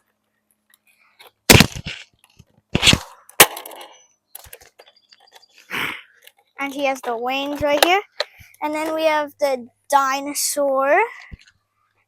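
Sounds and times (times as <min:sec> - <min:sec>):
plastic toy clattering: 0:01.2 - 0:05.5, 0:06.3 - 0:09.0.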